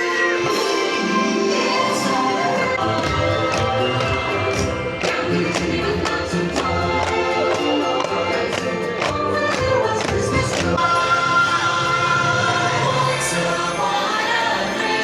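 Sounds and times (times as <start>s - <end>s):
choir singing festive music: 0.0s - 15.0s
jingling percussion beat: 2.8s - 10.8s.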